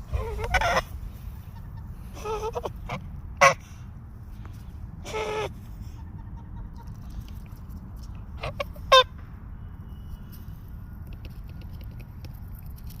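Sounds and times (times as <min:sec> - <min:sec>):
goose honking: 0:00.1 - 0:00.9, 0:02.1 - 0:03.8.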